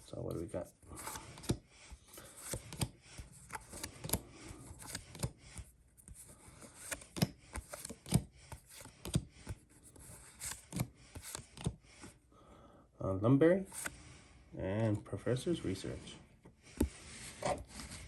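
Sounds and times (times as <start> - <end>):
cards sliding and rustling: 0.3 - 12.2, 13.7 - 14.4, 16.6 - 18.0
cards snapping: 1.0 - 1.6, 2.2 - 5.6, 6.5 - 11.8.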